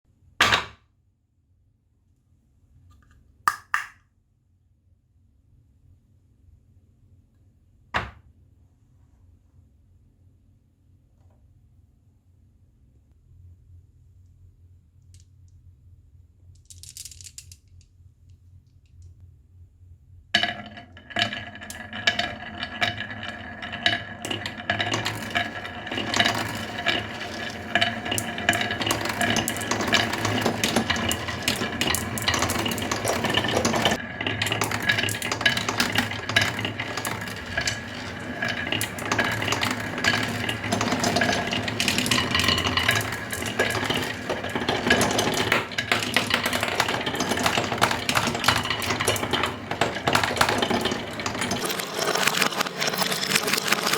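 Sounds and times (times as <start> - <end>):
clattering and clicking: 20.4 - 53.9.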